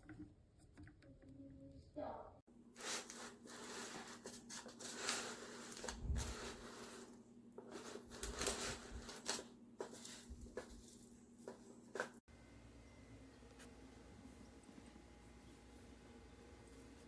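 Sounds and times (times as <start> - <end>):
rustling handling noise: 2.6 - 12.3.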